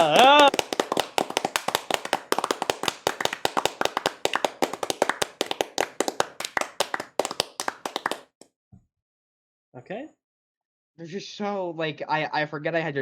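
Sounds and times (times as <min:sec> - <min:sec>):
rapid hand clapping: 0:00.0 - 0:08.5.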